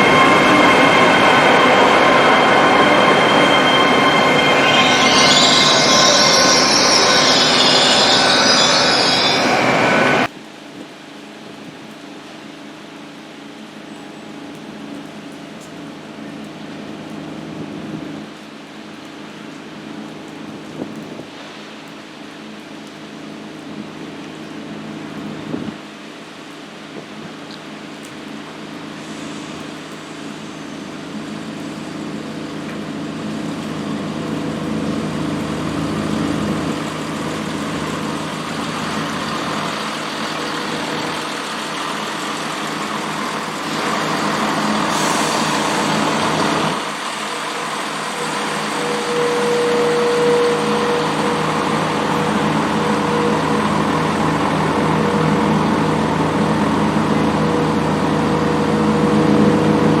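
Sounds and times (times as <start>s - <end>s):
diesel train engines running: 0.0s - 10.3s, 27.8s - 60.0s
steady whine: 0.0s - 10.3s, 28.0s - 60.0s.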